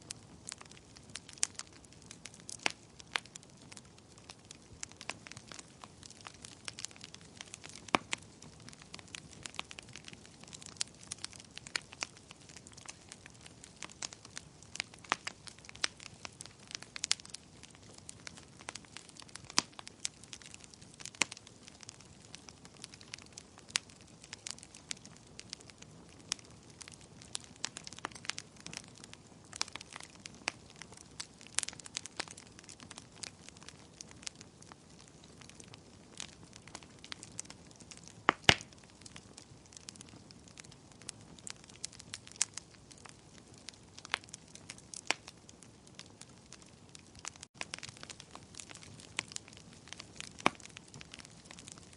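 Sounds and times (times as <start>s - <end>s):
faint steady hiss: 0.0s - 33.1s
fire crackling and popping: 0.0s - 51.9s.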